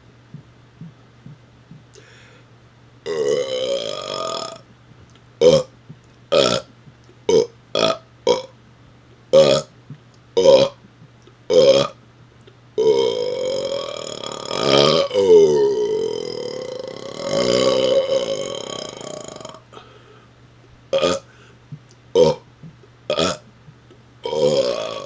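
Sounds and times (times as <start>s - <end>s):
man burping: 3.1s - 4.6s, 5.4s - 5.7s, 6.3s - 6.7s, 7.3s - 8.5s, 9.4s - 9.7s, 10.4s - 10.8s, 11.5s - 12.0s, 12.8s - 19.9s, 20.9s - 21.3s, 22.2s - 22.4s, 23.1s - 23.4s, 24.2s - 25.0s.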